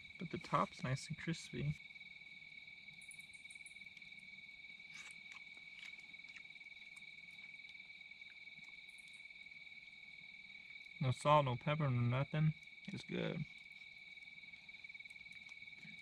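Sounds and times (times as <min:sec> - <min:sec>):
insects trilling: 0:00.0 - 0:16.0.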